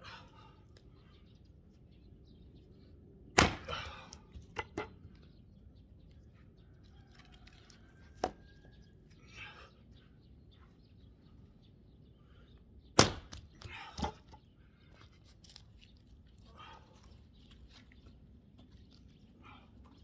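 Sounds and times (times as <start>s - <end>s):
axe striking log: 3.4s - 4.9s, 13.0s - 14.4s.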